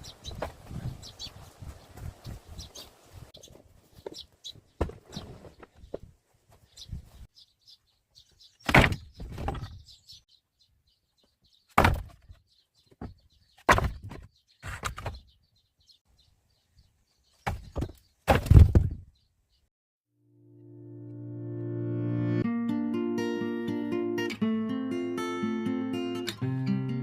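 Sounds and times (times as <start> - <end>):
birds chirping faintly: 0.0 - 18.3.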